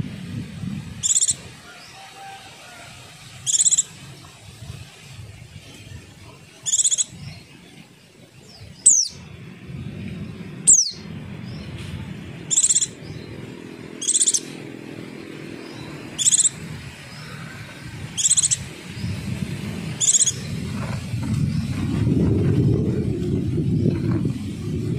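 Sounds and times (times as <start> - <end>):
downward-sliding bird whistles: 20.0 - 20.5.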